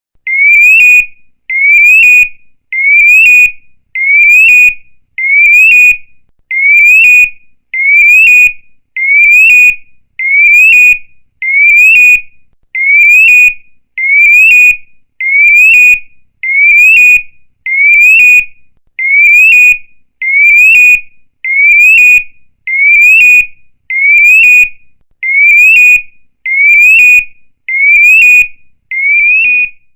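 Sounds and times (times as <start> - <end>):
electronic police siren: 0.3 - 12.2, 12.8 - 29.9.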